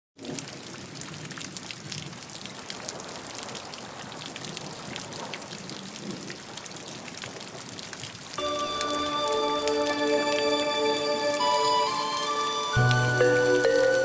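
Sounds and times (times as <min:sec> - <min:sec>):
falling water splashing: 0:07.4 - 0:14.0
soft music with held notes: 0:08.4 - 0:14.0.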